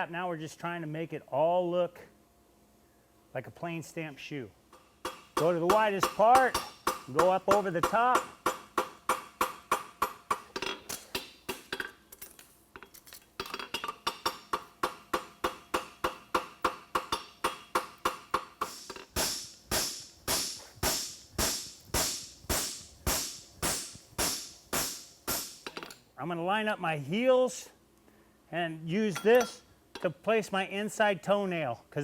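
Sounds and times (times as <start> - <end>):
hammer striking horseshoe on anvil: 4.7 - 11.9, 13.4 - 26.0, 29.1 - 30.1.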